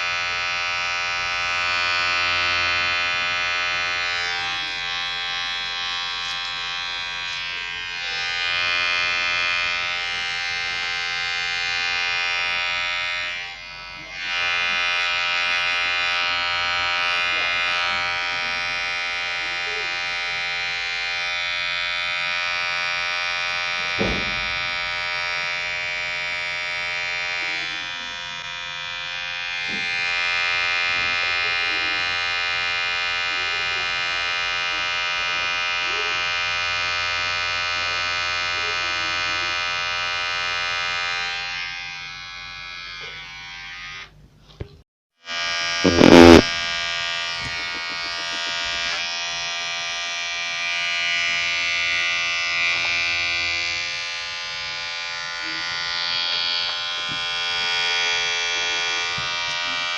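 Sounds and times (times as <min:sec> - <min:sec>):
hair clipper buzzing: 0:00.0 - 0:59.9
loud burst: 0:45.9 - 0:46.5.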